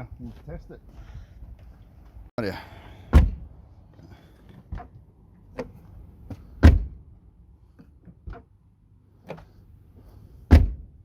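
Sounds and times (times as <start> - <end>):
car door latch clunks and clicks: 3.1 - 3.4, 5.6 - 7.0, 10.5 - 10.9.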